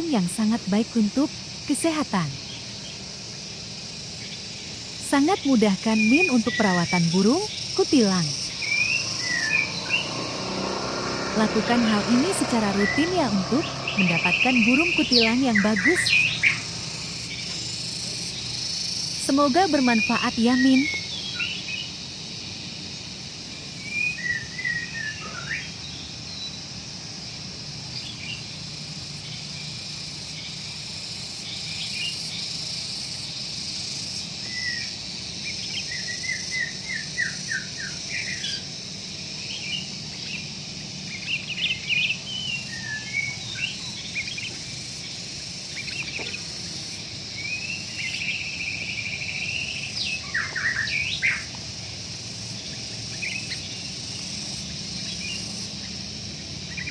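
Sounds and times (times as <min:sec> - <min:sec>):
bird chirps and trills: 0:00.0 - 0:22.0, 0:39.4 - 0:51.5, 0:52.3 - 0:56.0
high insect buzz: 0:00.0 - 0:56.9.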